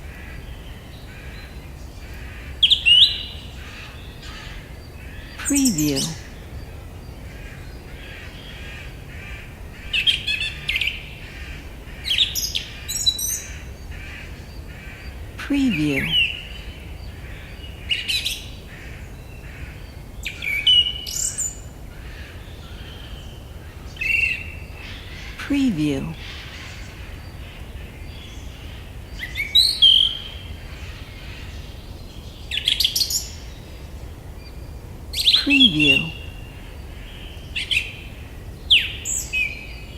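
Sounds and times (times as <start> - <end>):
distant birdsong chorus: 0.0 - 15.4, 16.1 - 25.4, 26.2 - 35.5, 36.1 - 39.9
faint woodland background: 0.0 - 39.9
songbirds chirping and trilling: 0.0 - 39.9.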